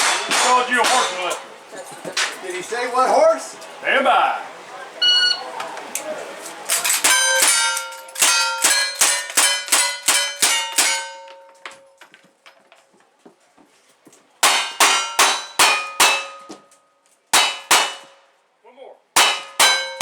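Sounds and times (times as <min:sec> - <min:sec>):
steel target clanging: 0:00.0 - 0:01.5, 0:06.7 - 0:12.0, 0:14.5 - 0:16.7.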